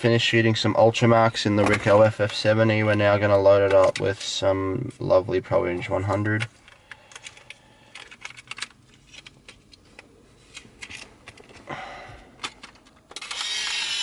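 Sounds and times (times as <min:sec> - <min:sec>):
film-advance motor whirring: 0:13.2 - 0:14.0.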